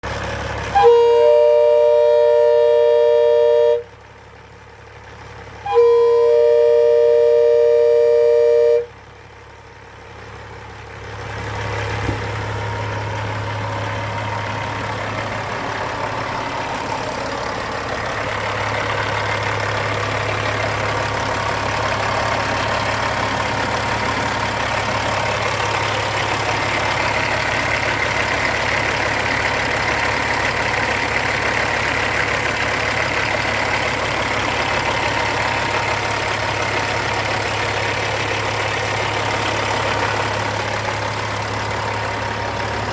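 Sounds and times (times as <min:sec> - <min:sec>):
truck diesel engine idling: 0:00.0 - 0:42.9
train horn blast: 0:00.7 - 0:03.9, 0:05.6 - 0:09.0.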